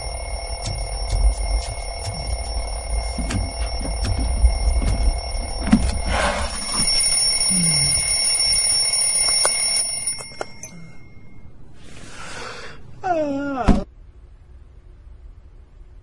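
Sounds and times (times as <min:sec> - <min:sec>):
alarm clock ticking: 0:00.0 - 0:11.4
alarm clock ringing: 0:00.0 - 0:11.5.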